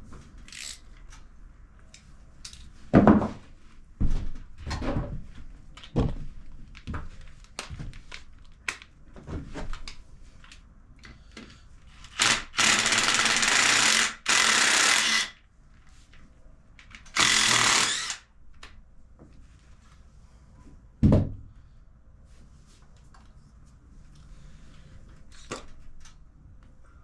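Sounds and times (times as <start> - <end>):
tools and parts clicking: 0.4 - 1.2, 2.4 - 2.7
impact gun spinning bolts: 12.0 - 15.3, 17.1 - 18.2.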